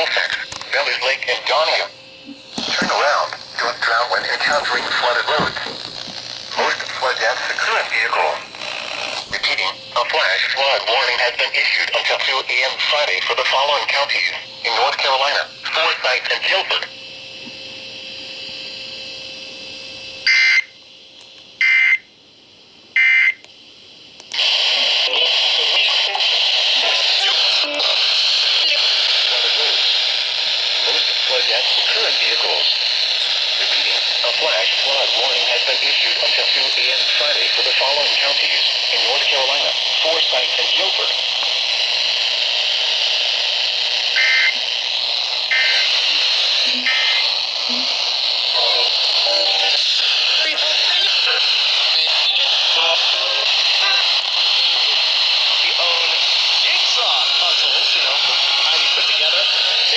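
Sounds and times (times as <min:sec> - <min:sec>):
radio hiss: 0:00.0 - 0:17.1, 0:24.3 - 0:59.9
screeching data bursts: 0:44.0 - 0:47.8
short data bursts: 0:44.0 - 0:59.9.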